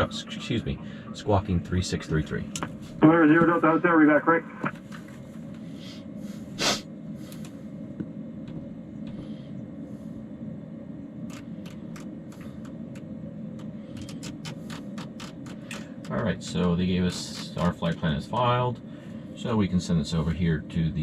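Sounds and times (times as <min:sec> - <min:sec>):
steady low cockpit hum: 0:00.0 - 0:21.0
short breathy burst: 0:05.7 - 0:07.4.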